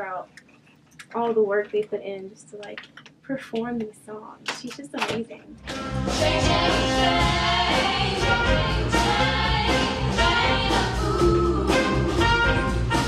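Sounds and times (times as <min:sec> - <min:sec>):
steady bass line: 0:05.6 - 0:13.0.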